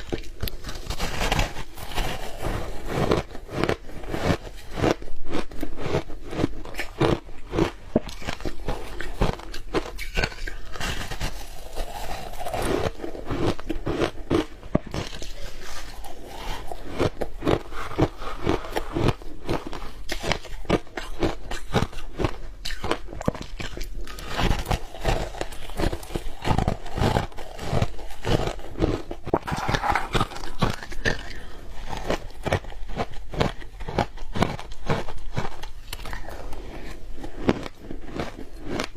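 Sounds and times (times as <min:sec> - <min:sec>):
crunching and chewing shaved ice: 0:00.0 - 0:38.9.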